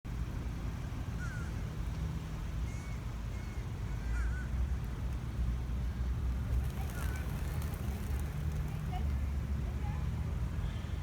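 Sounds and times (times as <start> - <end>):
faint bird calls: 1.2 - 1.7, 2.6 - 4.8.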